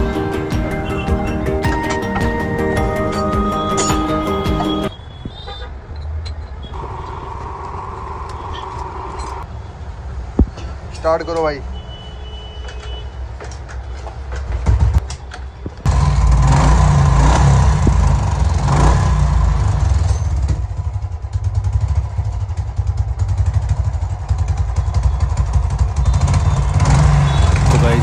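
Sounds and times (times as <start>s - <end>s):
motorcycle engine starting and running: 15.8s - 28.0s.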